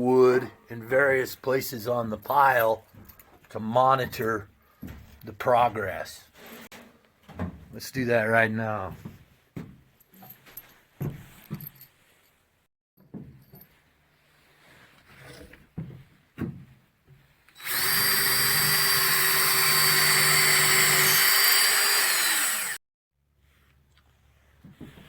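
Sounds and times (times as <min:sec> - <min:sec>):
power drill boring into wood: 0:17.6 - 0:22.8.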